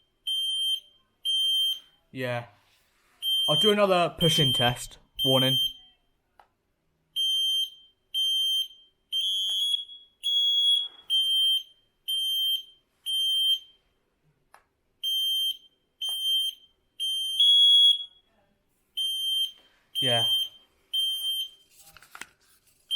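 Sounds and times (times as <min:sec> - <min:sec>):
smoke alarm beeping: 0:00.0 - 0:02.0, 0:03.2 - 0:06.0, 0:07.2 - 0:14.0, 0:15.0 - 0:18.3, 0:19.0 - 0:21.8
second alarm higher beep: 0:03.2 - 0:06.0, 0:19.0 - 0:21.6.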